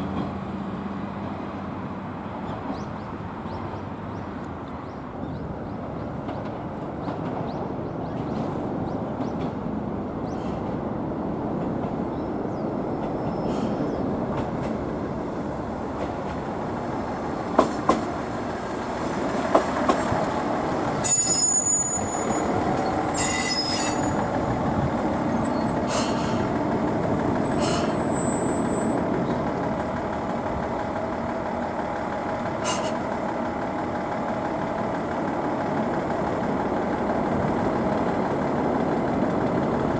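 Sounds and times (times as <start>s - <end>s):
rail joint clicks: 0.0s - 1.4s, 2.2s - 39.9s
railcar rumbling along track: 0.0s - 39.9s
wheel squeals: 20.8s - 29.0s.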